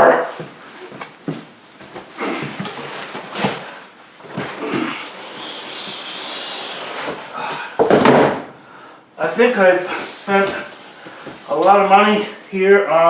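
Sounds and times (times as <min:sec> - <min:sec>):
cardboard rustling and scraping: 0:00.4 - 0:05.6, 0:09.4 - 0:11.8
high wavering packaging squeak: 0:04.5 - 0:07.6.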